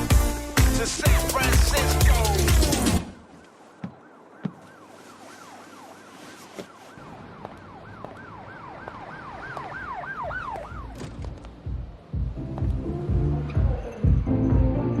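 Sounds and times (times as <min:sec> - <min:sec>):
fast yelping siren: 0:03.0 - 0:11.0.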